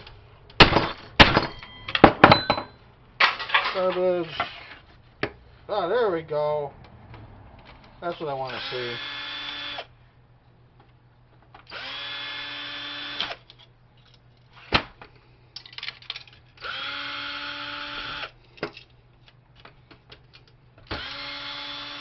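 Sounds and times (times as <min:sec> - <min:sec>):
clatter of parts being handled: 0:00.8 - 0:04.6, 0:13.5 - 0:14.5, 0:15.6 - 0:16.6
power drill whining: 0:08.5 - 0:09.9, 0:11.7 - 0:13.4, 0:16.6 - 0:18.4, 0:20.9 - 0:22.0.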